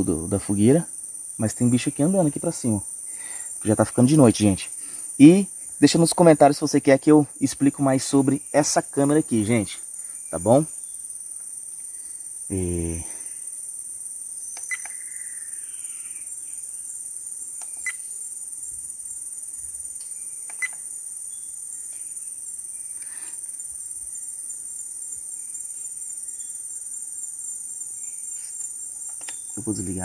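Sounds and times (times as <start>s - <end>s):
insects chirping: 0.0s - 30.0s
short voice sound: 12.5s - 13.2s
sharp clicks with brief tones: 14.5s - 15.0s, 17.6s - 18.0s, 20.0s - 20.9s, 29.0s - 29.6s.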